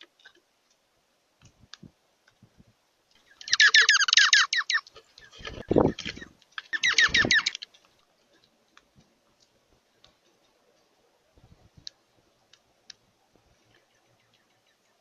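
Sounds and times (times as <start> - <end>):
faint clicks and taps: 1.4 - 2.5, 7.6 - 10.9
bird chirping rapidly: 3.2 - 4.9, 5.6 - 7.6.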